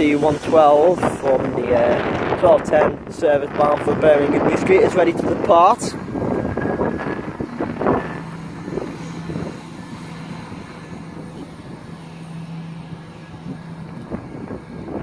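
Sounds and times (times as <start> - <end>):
train diesel engines droning: 0.0 - 15.0.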